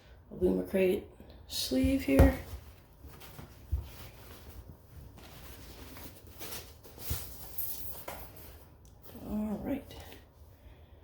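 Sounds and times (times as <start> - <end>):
paper packaging rustling: 2.5 - 8.6.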